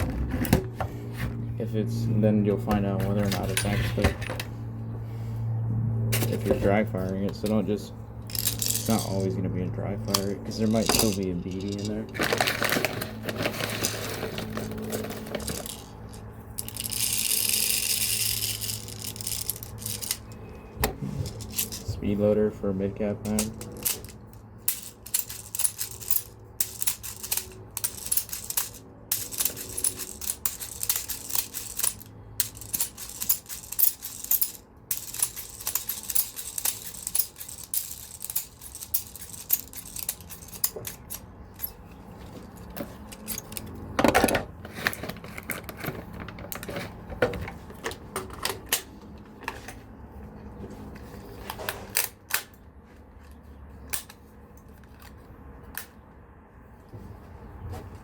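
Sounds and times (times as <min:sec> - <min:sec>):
bbs clicking and rattling: 0:08.2 - 0:09.3, 0:10.1 - 0:20.4, 0:21.2 - 0:21.9, 0:23.3 - 0:48.7.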